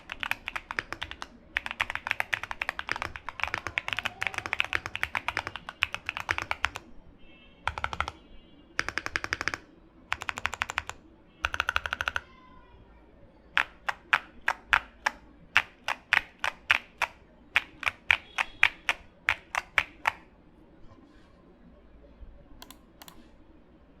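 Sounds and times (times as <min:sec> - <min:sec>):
typing on mechanical keyboard: 0:00.0 - 0:06.8, 0:07.6 - 0:08.2, 0:08.8 - 0:12.4, 0:13.6 - 0:20.3, 0:22.6 - 0:23.2.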